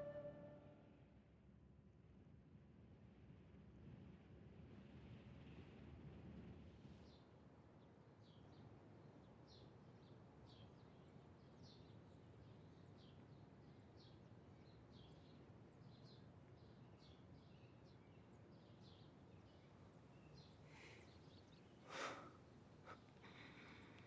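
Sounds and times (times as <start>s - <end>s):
faint high bird chirps: 0.0s - 0.7s.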